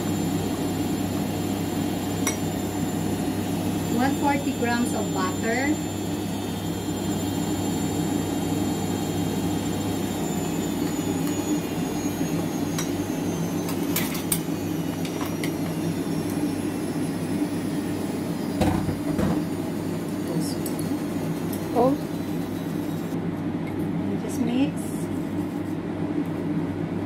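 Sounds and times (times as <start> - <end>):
electric hand mixer running: 0.0 - 23.2
mixer clinking against bowl: 13.6 - 15.6, 20.2 - 22.0.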